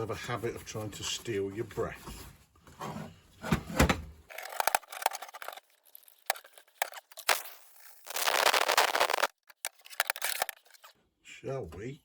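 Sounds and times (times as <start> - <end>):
clicks and scrapes of cleaning: 4.3 - 10.9.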